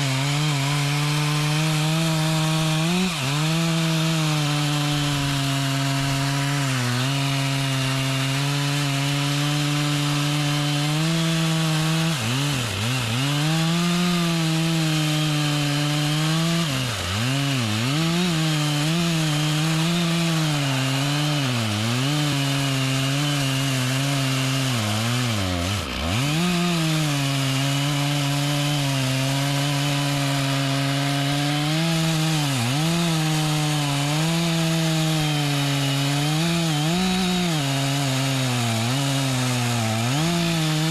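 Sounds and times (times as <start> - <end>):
chainsaw cutting wood: 0.0 - 40.9.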